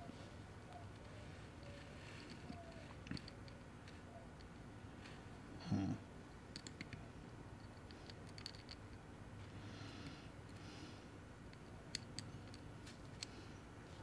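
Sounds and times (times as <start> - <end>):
small metal parts clicking: 0.9 - 5.2, 6.5 - 7.0, 7.6 - 9.0, 11.5 - 13.4.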